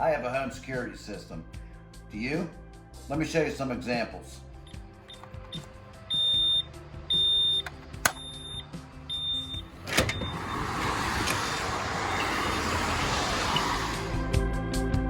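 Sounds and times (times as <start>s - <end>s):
security alarm beeping: 4.7s - 10.9s, 12.1s - 12.9s
sharp clicks: 7.6s - 8.4s.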